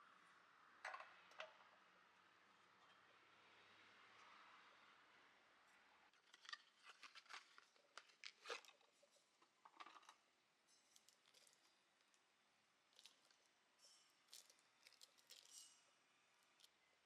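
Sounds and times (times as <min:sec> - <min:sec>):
faint clicks and crackles: 0:12.9 - 0:16.9.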